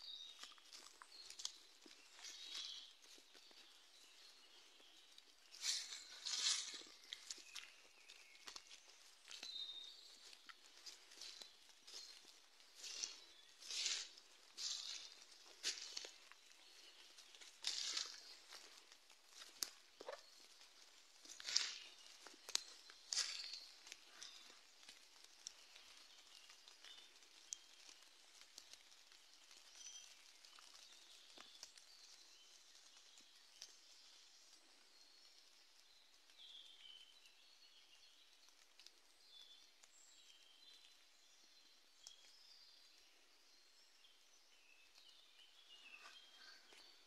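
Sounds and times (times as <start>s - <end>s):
forest ambience: 0.0s - 47.0s
faint bird chirps: 29.6s - 47.0s.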